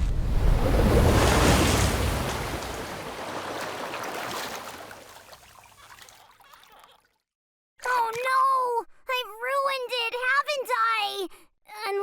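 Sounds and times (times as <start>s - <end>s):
cartoon water rush crashing: 0.0s - 5.8s.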